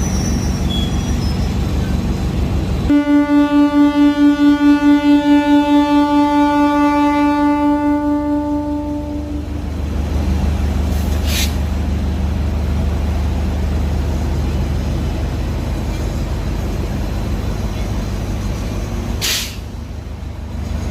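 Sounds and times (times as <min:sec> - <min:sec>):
diesel train engine rumbling: 0:00.0 - 0:20.9
air release hiss: 0:11.0 - 0:11.6, 0:19.2 - 0:19.7.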